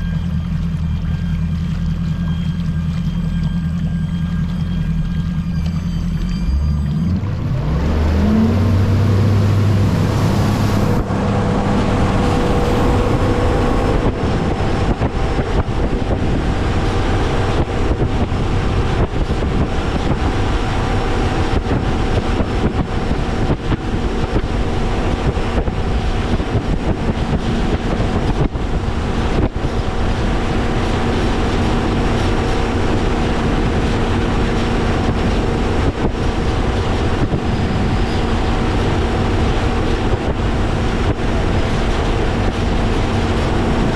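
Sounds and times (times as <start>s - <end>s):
boat hull through rough water: 0.0s - 43.9s
outboard motor driving boat: 0.0s - 43.9s
wind noise on microphone: 6.4s - 43.9s.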